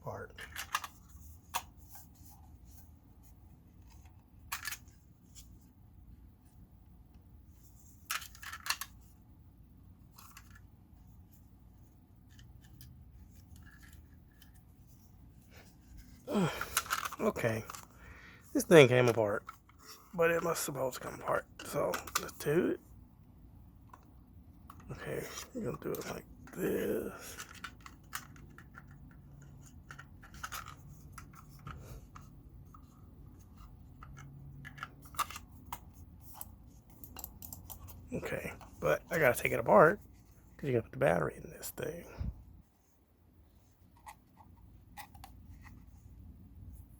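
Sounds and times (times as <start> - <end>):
plastic clicks and scratches: 0.4 - 2.0, 27.3 - 38.0.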